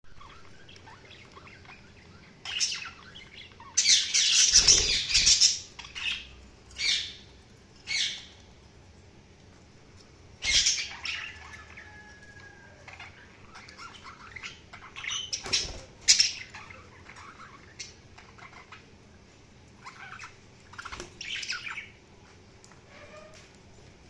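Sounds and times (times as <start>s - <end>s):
budgerigars chirping and squawking: 0.1s - 8.3s, 10.4s - 19.0s, 19.8s - 22.0s.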